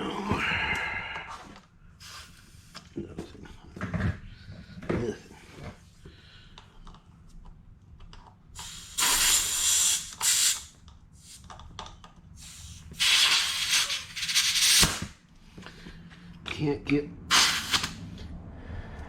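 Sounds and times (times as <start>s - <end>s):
pressurised gas hissing: 8.6s - 11.4s, 12.4s - 15.2s, 17.3s - 18.1s.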